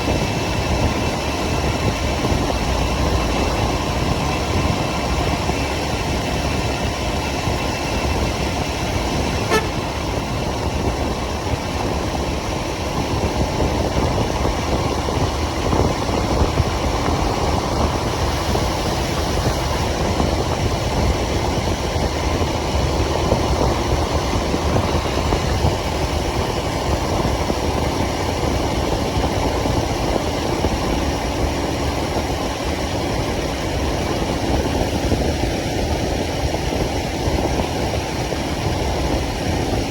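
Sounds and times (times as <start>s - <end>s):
motorcycle engine and road noise: 0.0s - 39.9s
vehicle horn: 9.2s - 10.2s.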